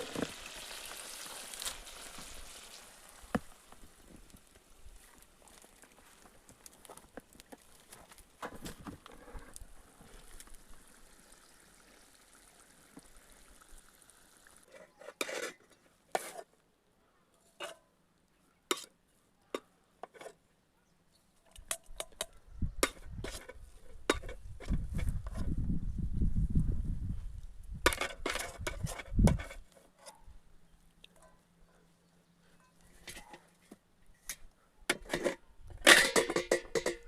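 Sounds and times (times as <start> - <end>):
utensils clinking against pots: 34.9 - 37.0.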